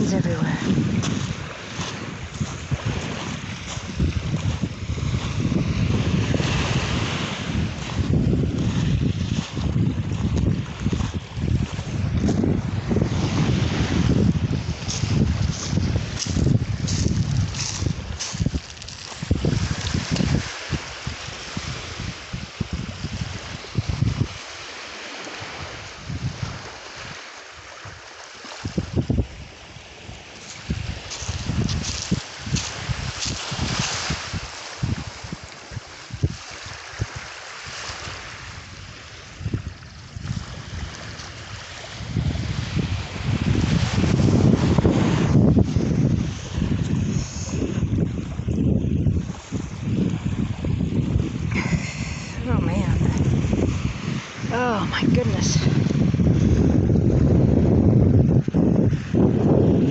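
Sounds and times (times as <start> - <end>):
surf rushing: 0.0 - 10.6, 30.4 - 57.2
wind buffeting microphone: 0.0 - 59.9.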